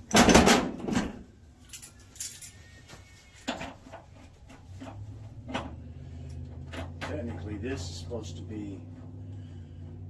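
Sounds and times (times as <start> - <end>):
low steady hum: 0.0 - 10.0
light metallic clinks and taps: 1.6 - 2.6.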